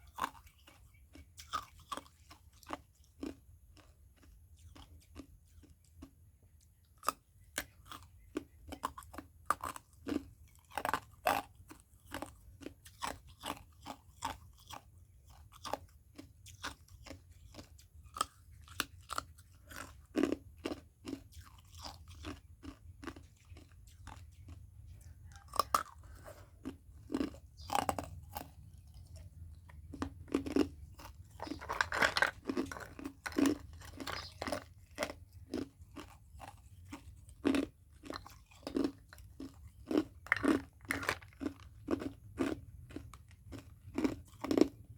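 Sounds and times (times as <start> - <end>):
ice crunching in mouth: 25.3 - 44.9.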